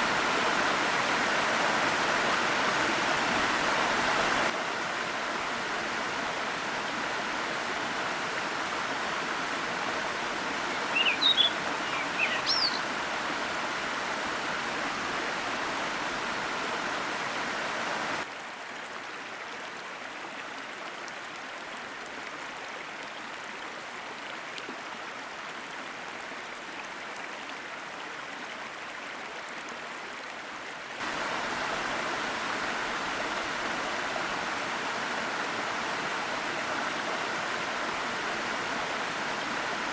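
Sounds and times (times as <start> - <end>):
waterfall rushing: 0.0 - 18.3, 31.0 - 39.9
bird chirps: 10.9 - 12.9.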